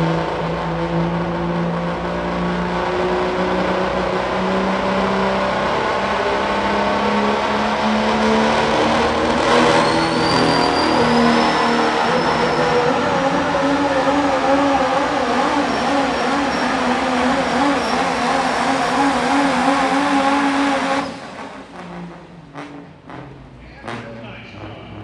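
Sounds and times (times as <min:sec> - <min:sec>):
diesel truck engine at full throttle: 0:00.0 - 0:25.0
high whistle: 0:09.5 - 0:13.6, 0:15.3 - 0:21.3.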